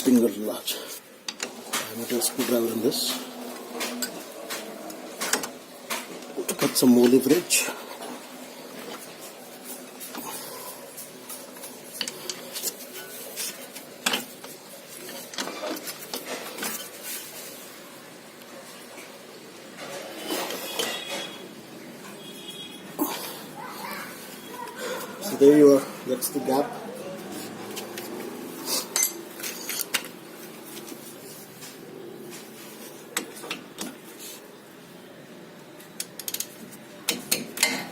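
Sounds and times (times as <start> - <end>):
metal tools clinking on metal: 28.9 - 30.1.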